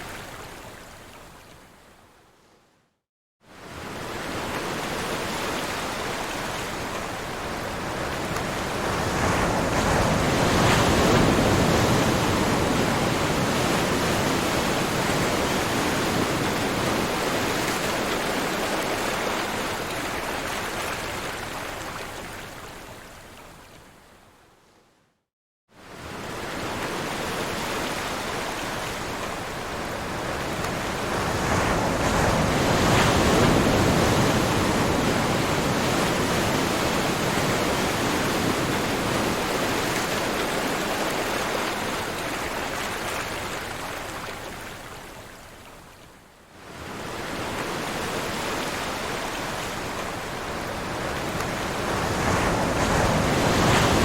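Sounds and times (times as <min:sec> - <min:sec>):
ocean waves breaking: 0:26.0 - 0:44.7, 0:46.7 - 0:54.0.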